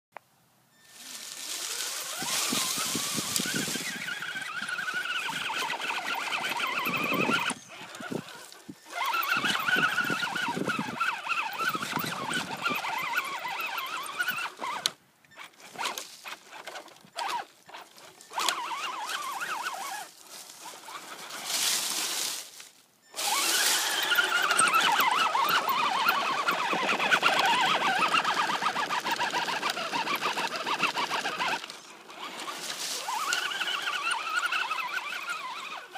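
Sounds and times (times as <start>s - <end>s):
electric motor and gears whining: 0.8s - 35.9s.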